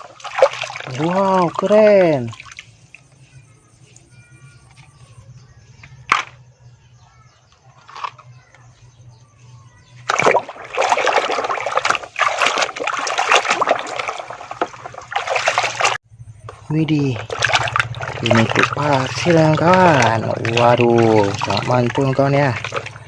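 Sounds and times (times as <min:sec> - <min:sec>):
water splashing and running: 0:00.0 - 0:03.1, 0:10.0 - 0:16.0, 0:16.9 - 0:23.0.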